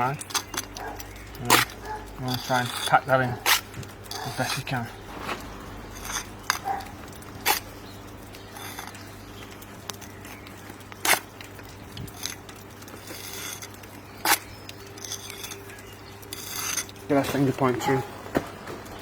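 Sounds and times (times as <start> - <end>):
trowel scraping brick and mortar: 1.4 - 7.8, 8.5 - 9.2, 11.0 - 11.3, 12.0 - 18.0.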